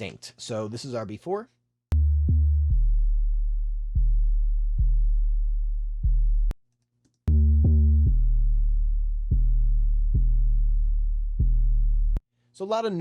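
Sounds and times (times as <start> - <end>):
sustained sub-bass notes: 1.9 - 6.5, 7.3 - 12.2.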